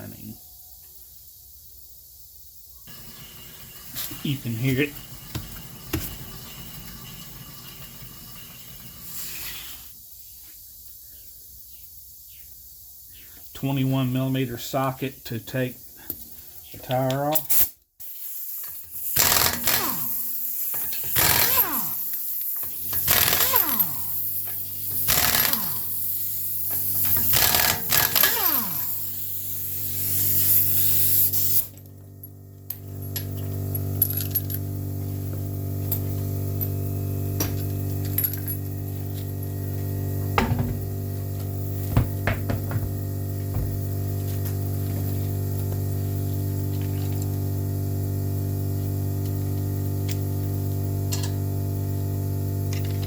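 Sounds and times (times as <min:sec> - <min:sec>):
impact wrench whine: 0:02.9 - 0:09.9, 0:18.6 - 0:53.0
steady low hum: 0:31.7 - 0:53.0.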